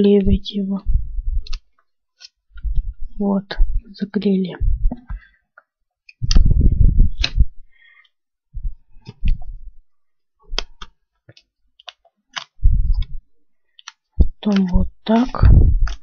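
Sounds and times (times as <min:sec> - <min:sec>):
hands rubbing paper: 0:11.8 - 0:16.0
sharp clicks and taps: 0:13.8 - 0:16.0.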